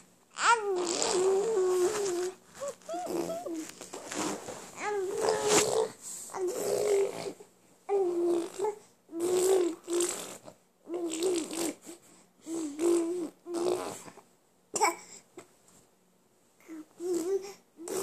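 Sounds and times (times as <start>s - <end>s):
baby babbling: 0.4s - 3.7s, 4.8s - 10.1s, 16.6s - 18.0s.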